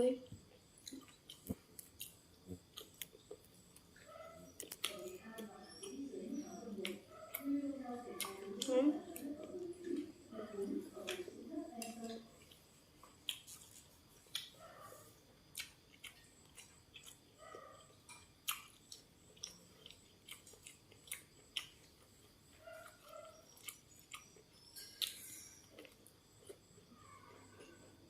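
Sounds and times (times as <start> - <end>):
person chewing crunchy food: 0.3 - 5.5, 11.8 - 14.6, 15.4 - 28.0.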